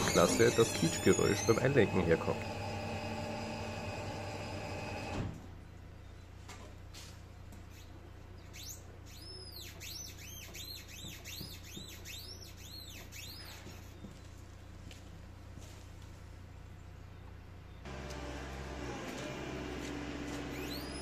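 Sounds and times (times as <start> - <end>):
suspension squeaking: 0.0 - 5.2, 20.2 - 21.0
steady hum: 0.0 - 5.4.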